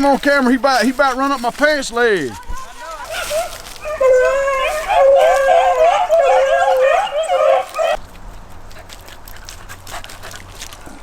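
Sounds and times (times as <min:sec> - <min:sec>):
hounds baying and yelping: 0:02.6 - 0:08.0.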